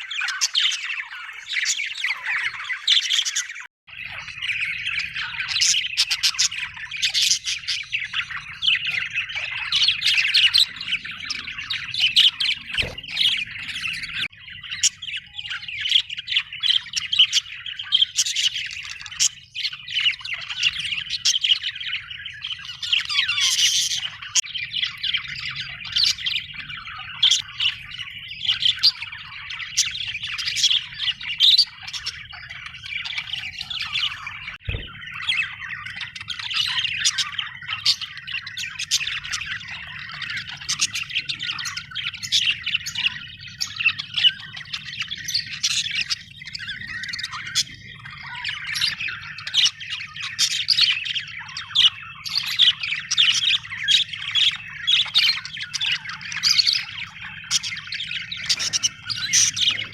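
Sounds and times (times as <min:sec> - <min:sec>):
budgerigars chirping: 0:00.0 - 0:59.9
thump: 0:34.6 - 0:35.0.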